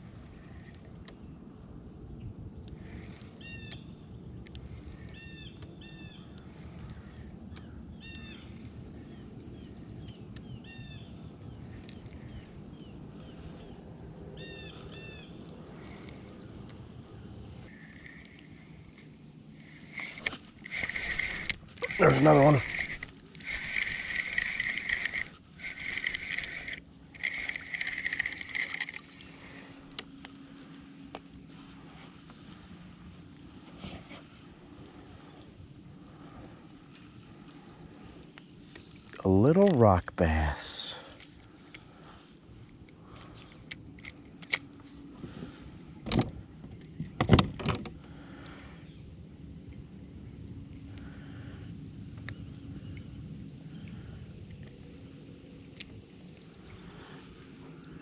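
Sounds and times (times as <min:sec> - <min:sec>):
fishing reel ticking whir: 0:00.0 - 0:01.2, 0:02.6 - 0:12.5, 0:17.7 - 0:30.2
low steady background noise: 0:00.0 - 0:58.0
light clicks: 0:18.0 - 0:29.1
bird calling: 0:19.7 - 0:29.3.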